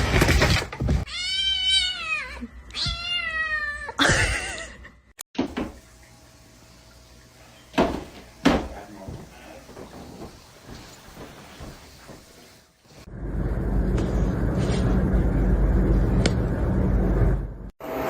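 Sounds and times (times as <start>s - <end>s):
cat meowing: 1.1s - 4.0s.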